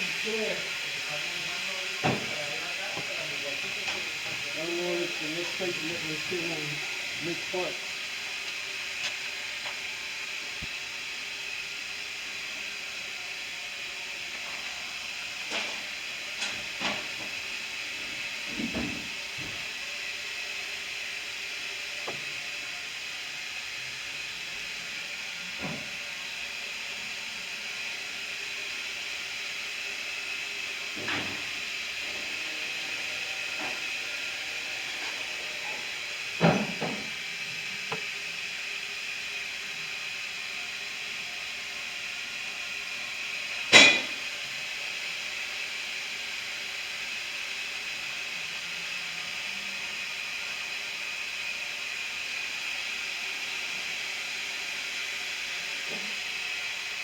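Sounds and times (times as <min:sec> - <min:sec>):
machinery hiss: 0:00.0 - 0:10.8.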